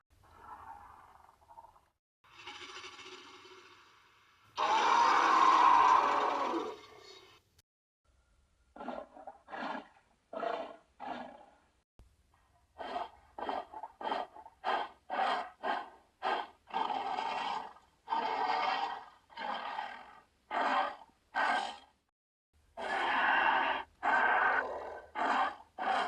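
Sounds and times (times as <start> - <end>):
monster roars: 4.6 - 6.8, 22.8 - 26.0
monster growls and grunts: 22.8 - 26.0.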